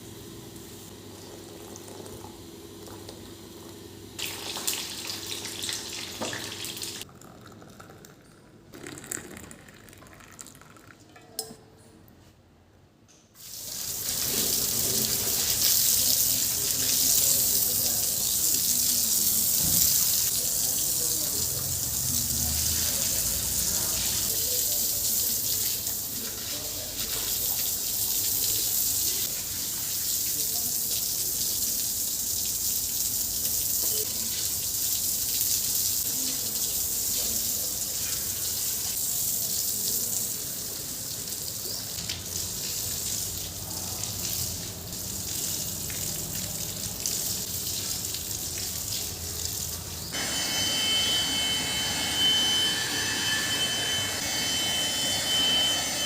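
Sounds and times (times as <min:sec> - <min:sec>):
tap water running into sink: 0:04.2 - 0:07.1, 0:13.4 - 0:49.9.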